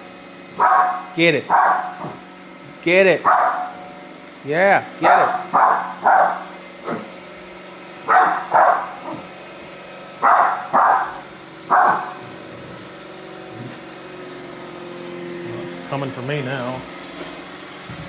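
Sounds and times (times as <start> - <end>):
robot vacuum motor hum: 0.0 - 18.0
dog barking: 0.6 - 2.2, 3.2 - 3.8, 5.0 - 7.1, 8.1 - 9.3, 10.2 - 12.4.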